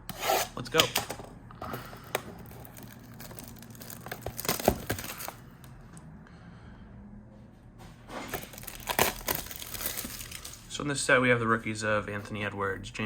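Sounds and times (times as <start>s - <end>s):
packaging crinkling and tearing: 1.8s - 5.7s, 8.2s - 10.7s.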